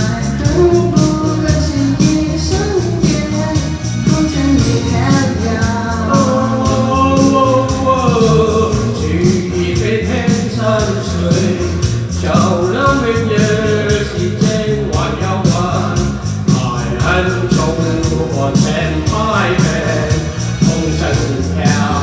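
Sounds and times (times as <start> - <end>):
person singing over a beat: 0.0 - 22.0.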